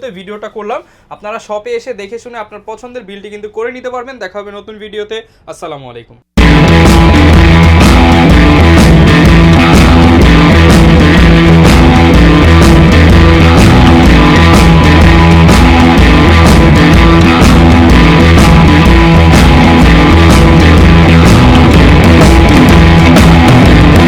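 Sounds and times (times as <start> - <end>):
rock music: 6.4 - 24.0.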